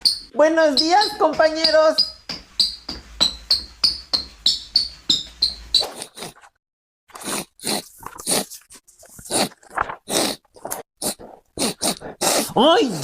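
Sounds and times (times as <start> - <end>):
person sniffing and snorting: 5.8 - 13.0.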